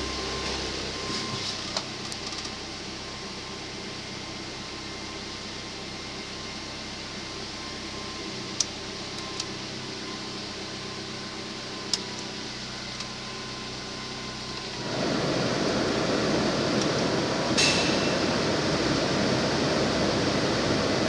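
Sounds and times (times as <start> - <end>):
steady rushing noise: 17.2 - 21.0.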